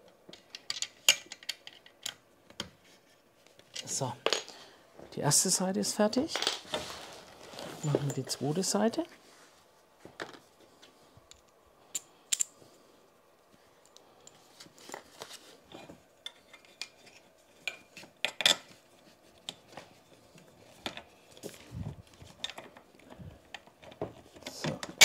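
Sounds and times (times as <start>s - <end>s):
metal tools clinking and knocking: 0.4s - 2.2s.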